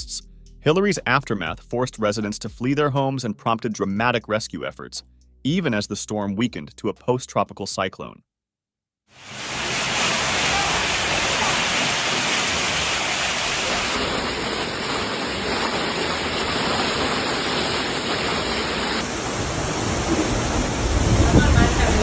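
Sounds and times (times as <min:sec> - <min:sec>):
storm water rushing: 0:09.2 - 0:22.0.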